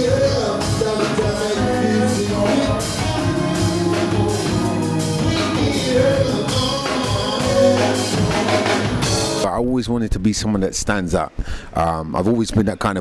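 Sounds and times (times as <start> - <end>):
live soul band playing: 0.0 - 9.4
person singing: 0.0 - 9.4.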